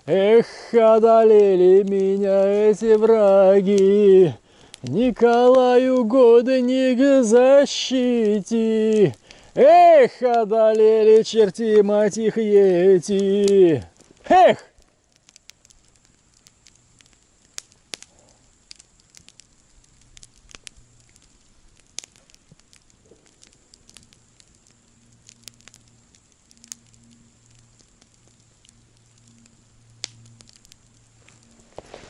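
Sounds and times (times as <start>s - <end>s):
campfire crackling and popping: 0.0s - 32.0s.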